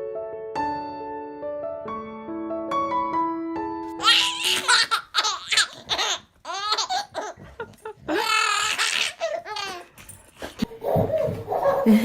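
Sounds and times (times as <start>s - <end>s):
baby squealing: 4.0s - 7.4s, 8.1s - 9.9s
baby laughing: 4.0s - 10.0s.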